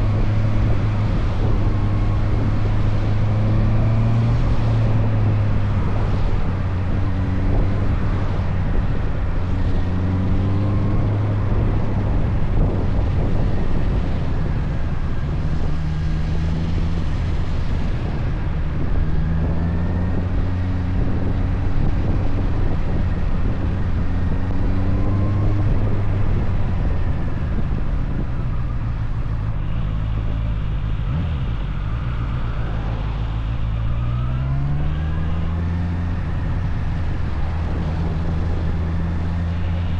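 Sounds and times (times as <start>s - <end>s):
wind noise: 0.0s - 39.9s.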